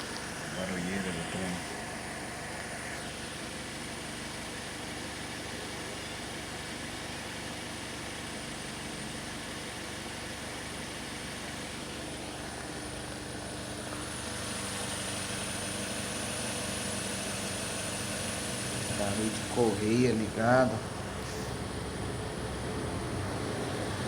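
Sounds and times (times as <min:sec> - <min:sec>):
car engine running: 0:00.0 - 0:24.0.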